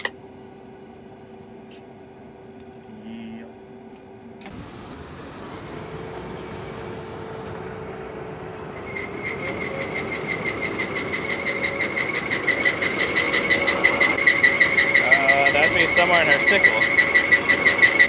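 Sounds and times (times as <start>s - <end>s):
combine header rumbling: 4.4s - 18.0s
high pulsing squeal: 4.5s - 18.0s.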